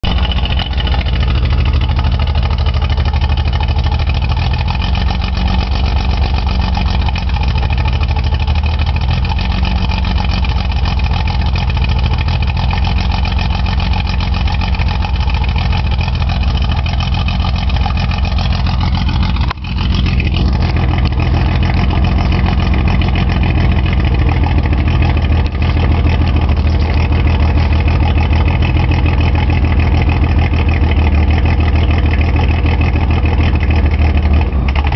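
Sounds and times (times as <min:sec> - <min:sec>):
car engine idling roughly: 0:00.0 - 0:34.9.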